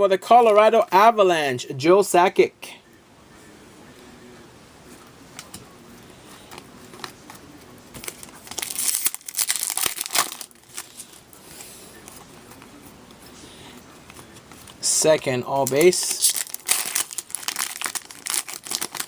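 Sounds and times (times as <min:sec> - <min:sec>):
wrapper tearing and crinkling: 0:08.0 - 0:11.0, 0:15.6 - 0:19.0.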